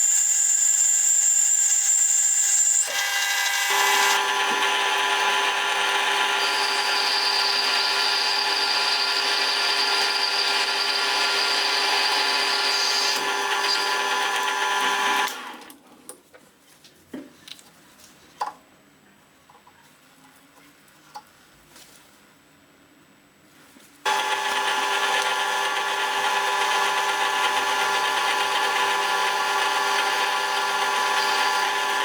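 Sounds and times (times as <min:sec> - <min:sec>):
power tool whining: 0:00.0 - 0:15.7, 0:24.1 - 0:32.0.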